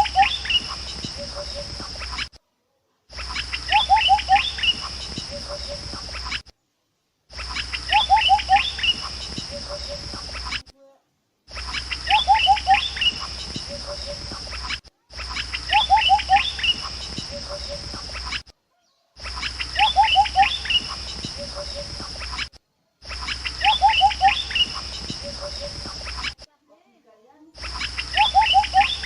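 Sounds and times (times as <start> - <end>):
steady high hiss: 0.0 - 2.4, 3.1 - 18.5, 19.2 - 26.5, 27.5 - 29.0
bird falling chirps: 3.2 - 6.4, 7.4 - 10.6, 11.5 - 14.6, 15.2 - 18.4, 23.1 - 26.4, 27.6 - 29.0.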